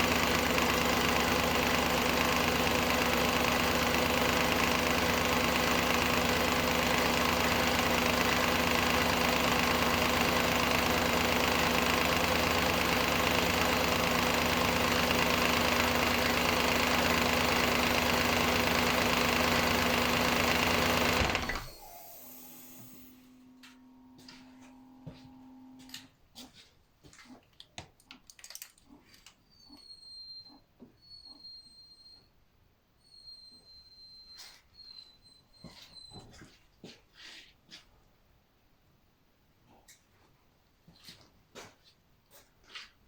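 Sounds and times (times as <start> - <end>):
rapid engine knock: 0.0 - 21.4
car engine idling: 0.0 - 22.8.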